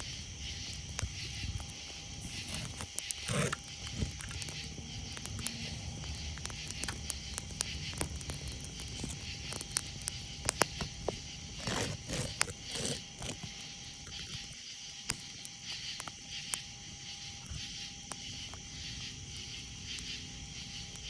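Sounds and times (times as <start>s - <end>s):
campfire crackling and popping: 0.0s - 21.0s
night insects chirping: 0.0s - 21.0s
noisy scrapes: 1.0s - 13.6s.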